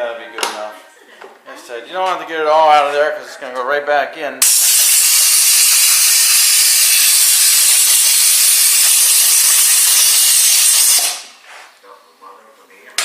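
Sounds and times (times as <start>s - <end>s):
pressurized air jet hissing: 4.4s - 11.3s.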